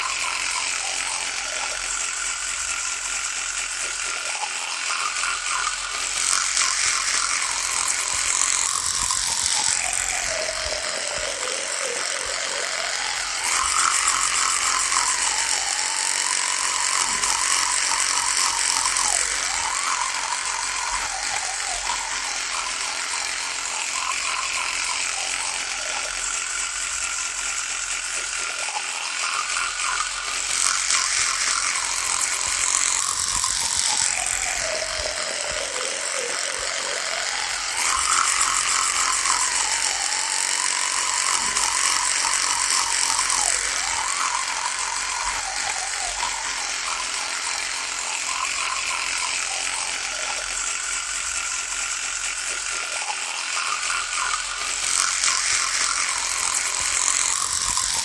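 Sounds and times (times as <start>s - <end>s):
electric toothbrush buzzing: 0.0s - 58.0s.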